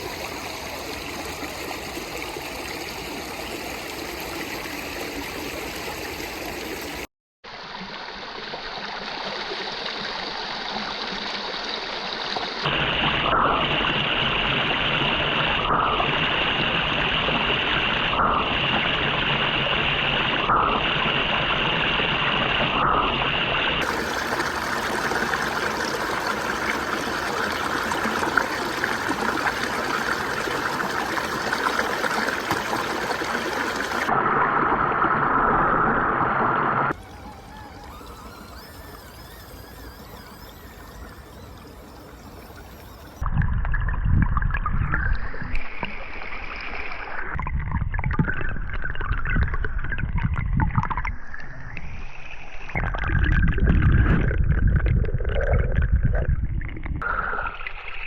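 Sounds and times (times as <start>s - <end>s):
creek water flowing: 0.0s - 20.4s, 23.8s - 43.2s.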